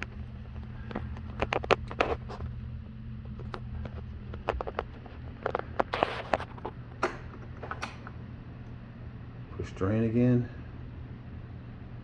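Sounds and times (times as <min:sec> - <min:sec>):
steady low hum: 0:00.0 - 0:12.0
drain hose clicks and scrapes: 0:03.4 - 0:08.2.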